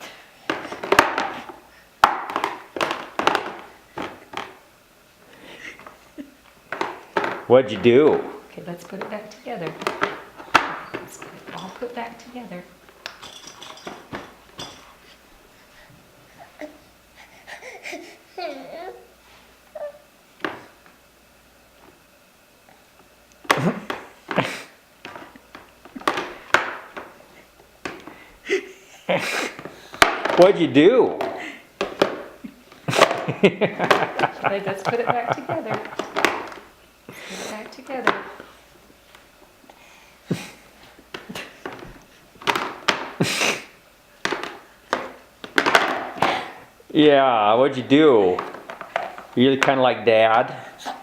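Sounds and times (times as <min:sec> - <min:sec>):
plastic parts knocking and clattering: 0:00.4 - 0:04.6, 0:06.7 - 0:12.1, 0:13.0 - 0:14.8, 0:23.5 - 0:27.2, 0:29.5 - 0:36.7, 0:37.8 - 0:38.4, 0:41.1 - 0:43.2, 0:44.2 - 0:46.6, 0:48.2 - 0:49.8
high chair tray knocking: 0:00.5 - 0:04.6, 0:06.7 - 0:12.0.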